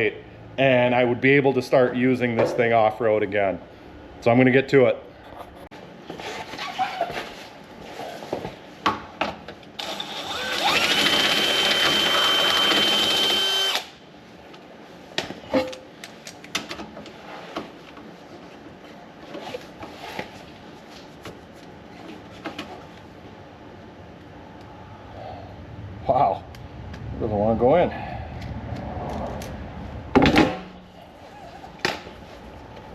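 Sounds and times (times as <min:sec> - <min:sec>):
power drill whining: 0:09.8 - 0:13.9.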